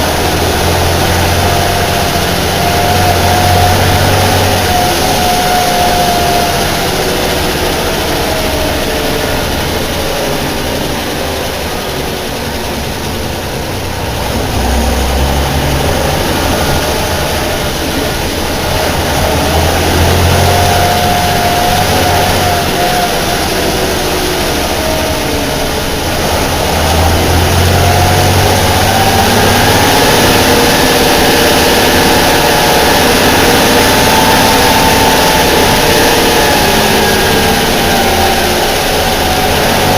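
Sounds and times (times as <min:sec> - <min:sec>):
bus diesel engine revving: 0:00.0 - 0:39.9
engine whine: 0:00.0 - 0:39.9.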